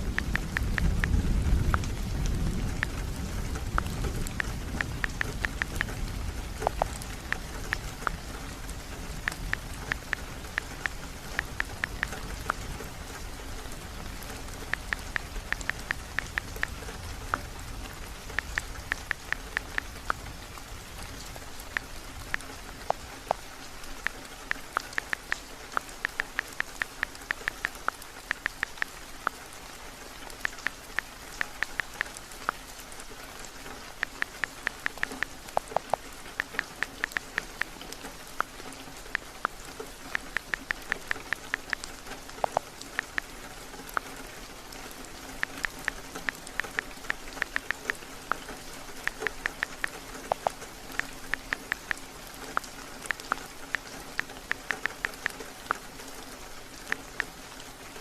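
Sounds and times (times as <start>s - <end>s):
steady rain: 0.0s - 58.0s
touchscreen typing clicks: 40.2s - 41.8s, 51.2s - 53.8s.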